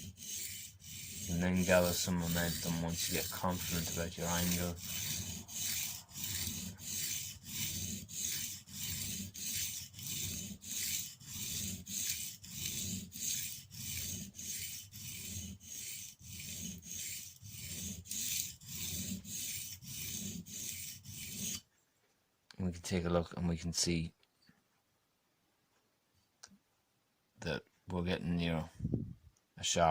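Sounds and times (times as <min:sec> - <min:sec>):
blade scraping on sharpening stone: 0:00.0 - 0:21.6.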